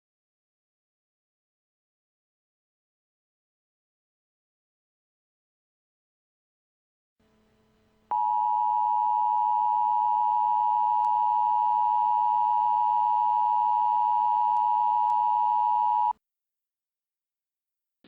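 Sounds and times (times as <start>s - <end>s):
loud steady electronic tone: 8.1s - 16.1s.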